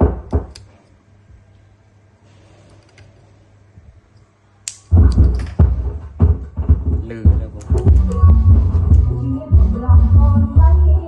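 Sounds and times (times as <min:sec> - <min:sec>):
sharp clicks and knocks: 0:00.0 - 0:00.9, 0:04.7 - 0:09.1
low mains hum: 0:00.0 - 0:11.0
loud bass-heavy music: 0:07.7 - 0:11.0.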